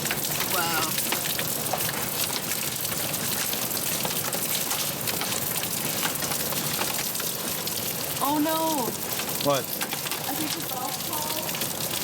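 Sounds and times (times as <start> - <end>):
heavy rain hiss: 0.0 - 3.4, 7.5 - 12.0
hailstones cracking: 0.0 - 12.0.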